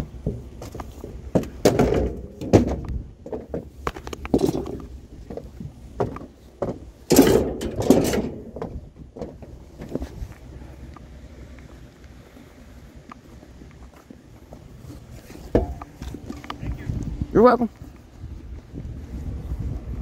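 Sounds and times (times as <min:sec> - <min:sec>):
rattling clatter: 0:00.2 - 0:10.1, 0:15.4 - 0:16.6
hard objects knocking: 0:15.5 - 0:16.6.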